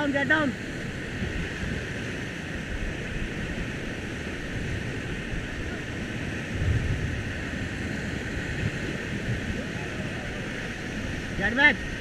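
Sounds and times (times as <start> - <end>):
whitewater rushing: 0.0 - 12.0
wind on microphone: 0.0 - 12.0.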